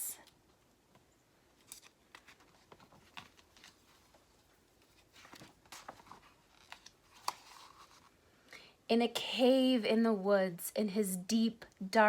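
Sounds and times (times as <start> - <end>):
paper pages turning: 1.6 - 8.1.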